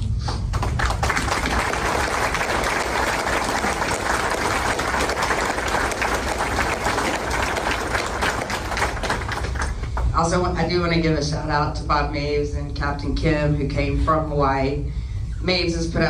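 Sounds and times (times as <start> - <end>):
audience applauding: 0.3 - 10.1.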